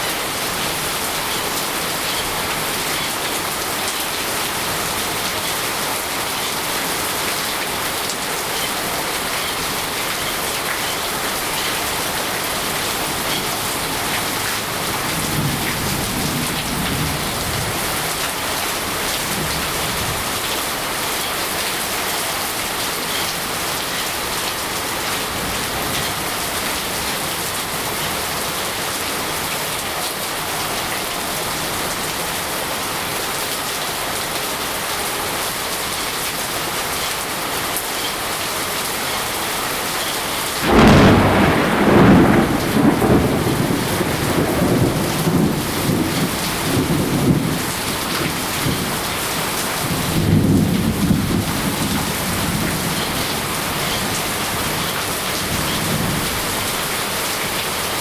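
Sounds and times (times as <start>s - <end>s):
rain falling: 0.0s - 58.0s
thunder rumbling: 40.6s - 56.4s.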